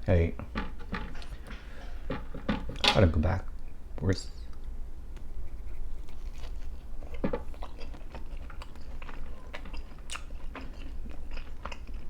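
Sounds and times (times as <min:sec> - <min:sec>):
person chewing pizza: 0:05.2 - 0:12.0.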